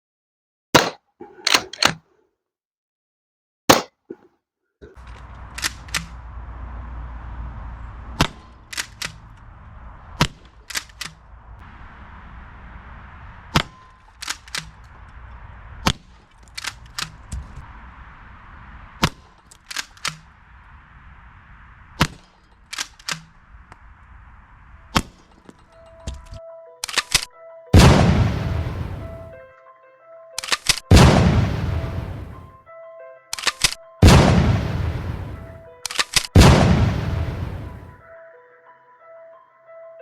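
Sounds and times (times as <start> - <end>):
shotgun shots cracking: 5.0 - 17.8, 18.4 - 29.4, 30.4 - 32.5, 33.3 - 38.0.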